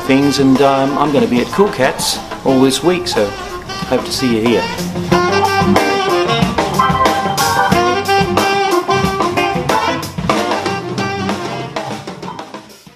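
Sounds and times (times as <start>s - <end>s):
saxophone melody: 6.8s - 8.7s.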